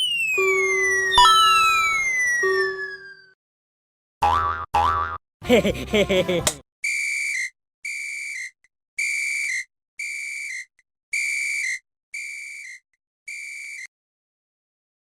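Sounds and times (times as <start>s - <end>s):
short whistle blasts: 6.8s - 13.9s.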